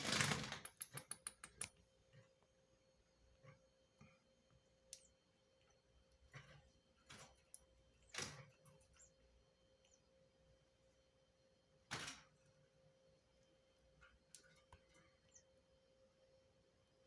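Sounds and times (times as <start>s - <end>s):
faint clicks: 0.5s - 1.8s.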